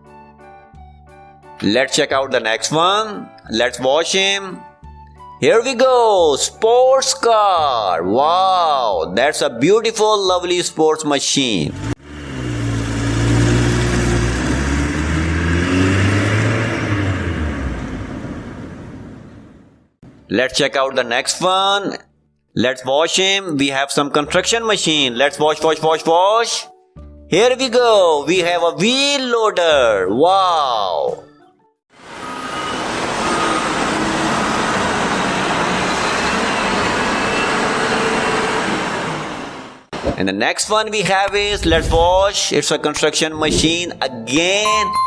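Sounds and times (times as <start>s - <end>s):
sports car engine revving: 11.8s - 19.2s.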